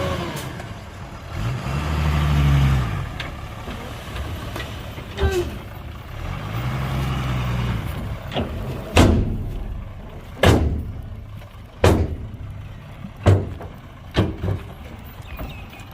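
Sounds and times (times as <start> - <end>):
engine running: 0.0 - 15.9
loud bangs: 8.8 - 12.6.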